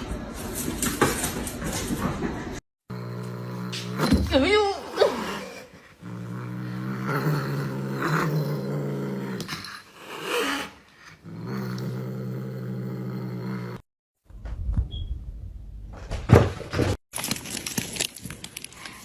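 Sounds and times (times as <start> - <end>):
pet growling: 2.9 - 13.9.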